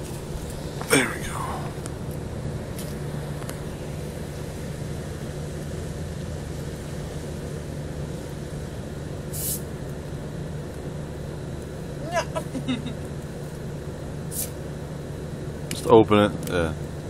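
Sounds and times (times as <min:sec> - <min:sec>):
low hum and rumble: 0:00.0 - 0:17.0
short hiss: 0:09.3 - 0:09.7, 0:14.3 - 0:14.6.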